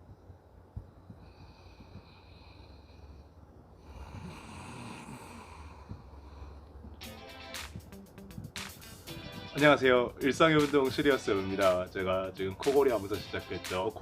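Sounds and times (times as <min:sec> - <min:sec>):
man snoring: 0:03.8 - 0:06.6
strummed guitar music: 0:07.0 - 0:14.0.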